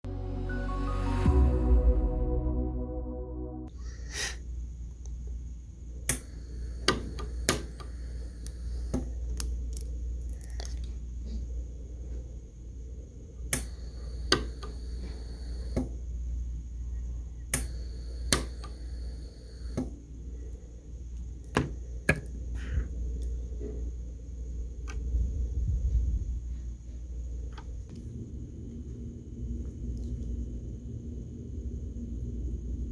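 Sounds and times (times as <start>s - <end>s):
high steady tone: 0.0s - 3.7s
steady low hum: 0.1s - 32.9s
welder pulse snaps: 6.1s - 9.5s, 13.5s - 15.8s, 17.6s - 18.9s.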